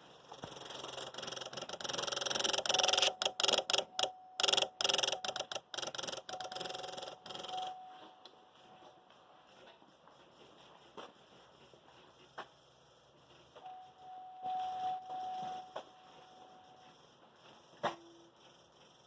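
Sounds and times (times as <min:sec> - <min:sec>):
relay clicking rapidly: 0:00.5 - 0:07.6.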